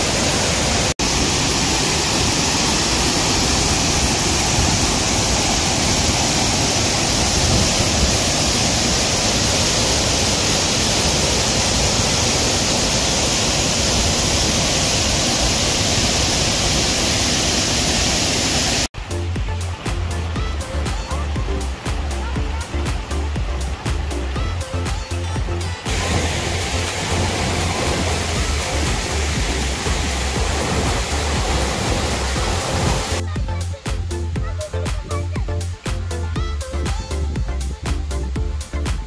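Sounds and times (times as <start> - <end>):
waterfall pouring: 0.0 - 33.3.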